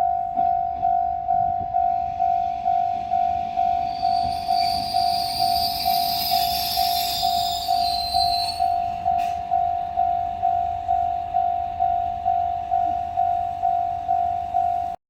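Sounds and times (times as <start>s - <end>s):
level crossing warning bell: 0.0s - 15.0s
train rumbling: 0.0s - 15.0s
high metallic squeal: 3.8s - 9.4s.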